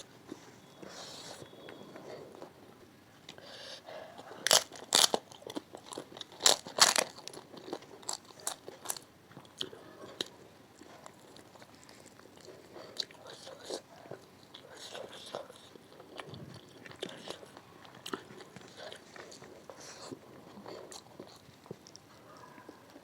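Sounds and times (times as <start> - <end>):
crunchy food biting and chewing: 4.2 - 22.2.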